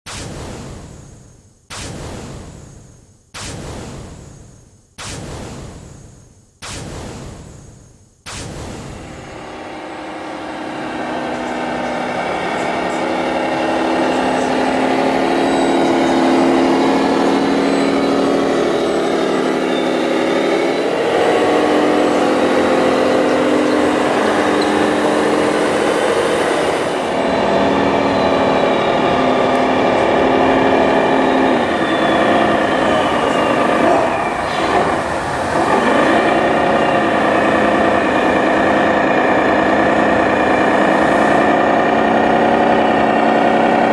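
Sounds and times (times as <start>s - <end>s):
model truck motor whine: 9.4s - 43.9s.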